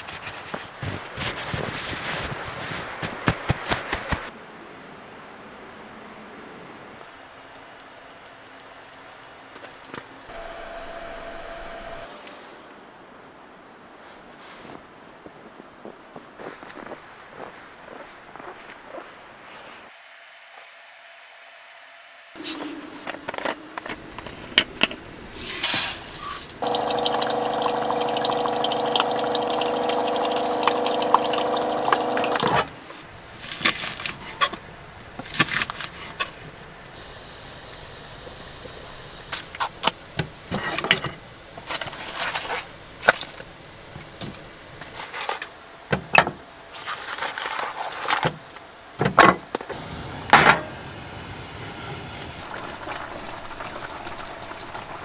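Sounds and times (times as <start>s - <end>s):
liquid pouring into pot: 25.7s - 32.7s.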